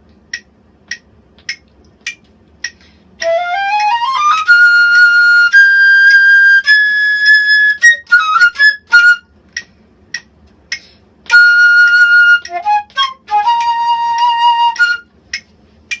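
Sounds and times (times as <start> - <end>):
solo flute playing: 3.2 - 9.3, 11.3 - 15.1.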